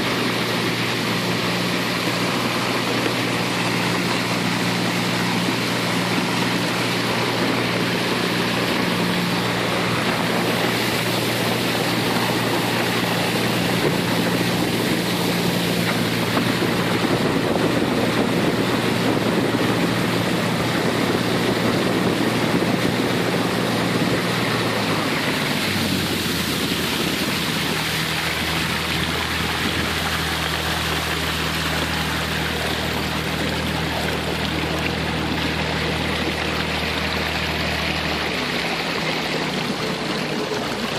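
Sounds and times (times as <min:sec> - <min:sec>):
boat motor running: 0:00.0 - 0:40.9
water and wind rushing past hull: 0:00.0 - 0:40.9.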